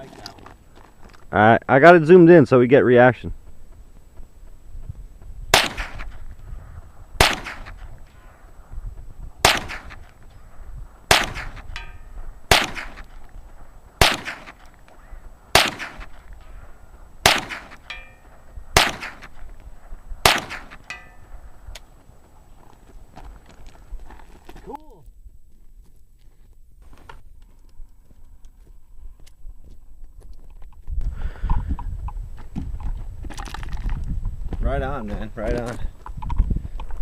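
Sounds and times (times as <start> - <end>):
rifle shots: 5.5 - 6.3, 7.2 - 8.3, 9.4 - 10.2, 11.1 - 13.2, 14.0 - 14.7, 15.5 - 16.2, 17.2 - 19.4, 20.2 - 20.9
faint ringing of distant target: 11.3 - 13.0, 17.4 - 19.4, 20.3 - 21.4.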